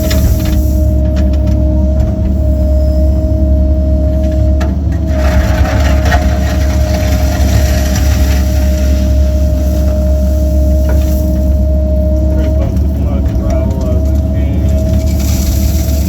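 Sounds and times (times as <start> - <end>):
excavator diesel engine running: 0.0 - 16.0
rattling: 4.2 - 16.0
high whine: 5.5 - 16.0.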